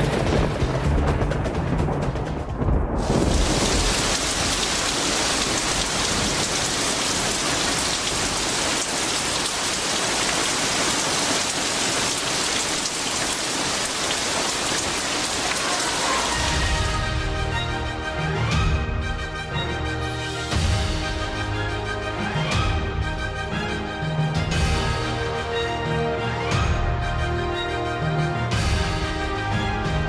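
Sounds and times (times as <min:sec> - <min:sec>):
heavy rain hiss: 0:03.0 - 0:17.6.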